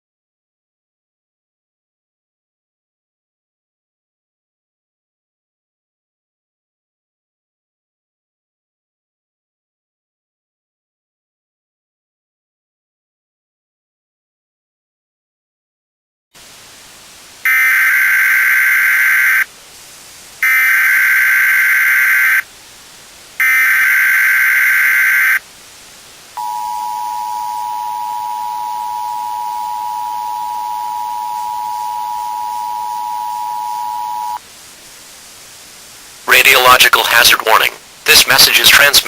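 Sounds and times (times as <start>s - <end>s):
faint hiss: 16.4s - 39.0s
two-tone attention signal: 17.5s - 19.4s, 23.4s - 25.4s, 26.4s - 34.4s
buzzy digital data bursts: 17.5s - 19.5s, 20.4s - 22.4s, 23.4s - 25.4s.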